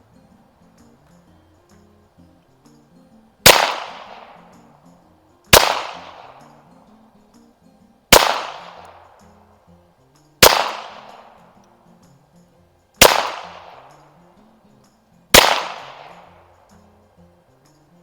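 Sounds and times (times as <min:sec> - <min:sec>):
pistol shots echoing: 0:03.4 - 0:04.6, 0:05.5 - 0:06.6, 0:08.1 - 0:09.2, 0:10.4 - 0:11.4, 0:13.0 - 0:14.0, 0:15.3 - 0:16.4.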